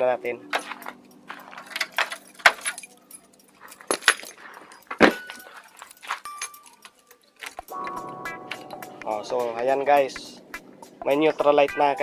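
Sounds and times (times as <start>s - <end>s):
keys jangling: 0.5s - 8.0s.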